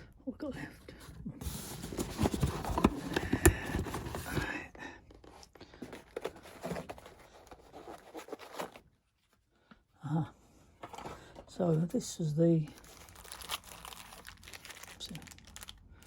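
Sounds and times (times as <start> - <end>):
packaging rustling: 1.4 - 4.5, 5.2 - 8.9, 12.7 - 15.9.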